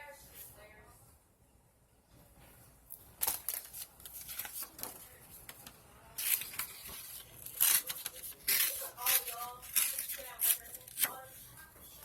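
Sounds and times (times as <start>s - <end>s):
paper rustling and crinkling: 3.2s - 12.0s.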